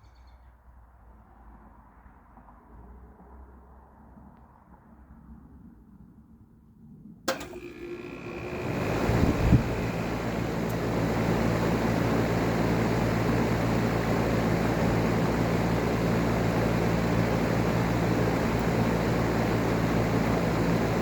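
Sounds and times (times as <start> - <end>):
compressor low hum: 7.3 - 21.0
condenser fan rushing: 7.3 - 21.0.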